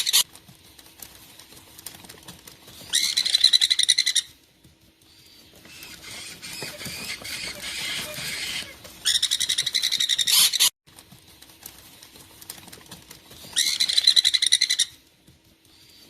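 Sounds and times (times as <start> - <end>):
parakeet chicks chirping: 0.0 - 0.2, 2.7 - 4.4, 5.1 - 10.7, 13.4 - 15.0.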